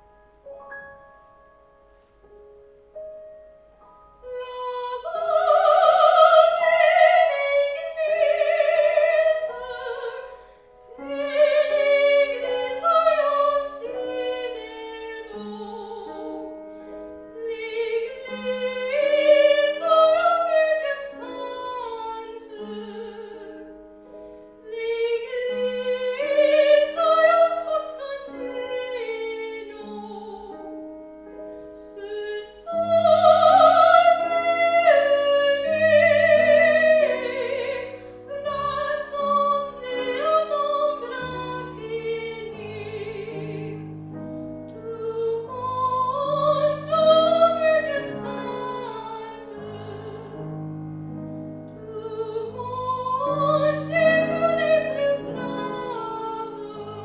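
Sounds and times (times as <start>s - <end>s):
piano accompaniment: 0.0s - 57.0s
classical singer with vibrato: 3.6s - 57.0s.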